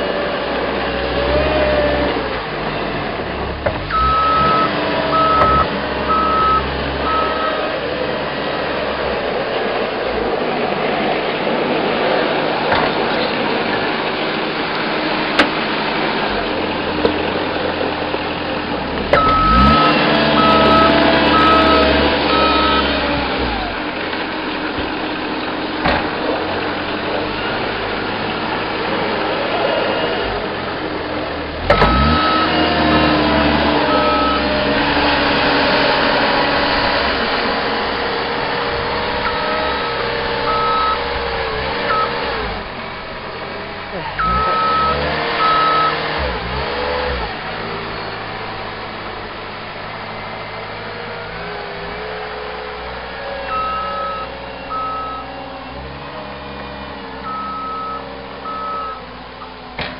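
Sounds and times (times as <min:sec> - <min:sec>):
diesel engine revving: 0:00.0 - 0:59.9
backup alarm beeping: 0:03.9 - 0:07.6, 0:19.2 - 0:23.0, 0:39.3 - 0:41.1, 0:41.9 - 0:42.2, 0:44.2 - 0:46.0, 0:53.5 - 0:55.3, 0:57.2 - 0:59.0.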